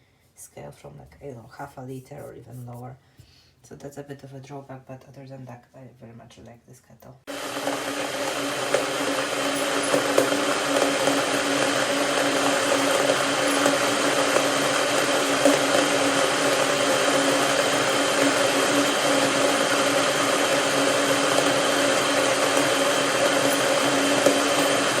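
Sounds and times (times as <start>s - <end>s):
electric kettle heating water: 7.3s - 25.0s.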